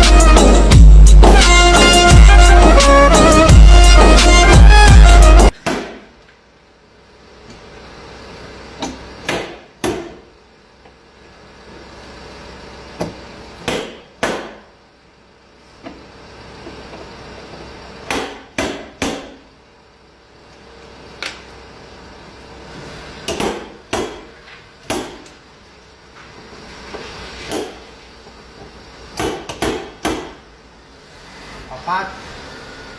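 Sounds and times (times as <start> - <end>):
hammer blows: 0.0 - 6.1.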